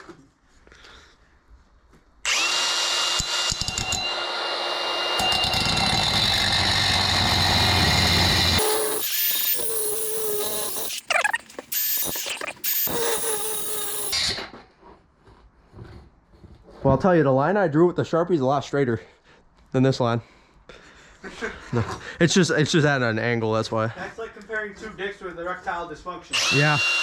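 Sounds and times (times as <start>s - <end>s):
power tool cutting metal pipe: 2.3s - 14.5s, 26.3s - 27.0s.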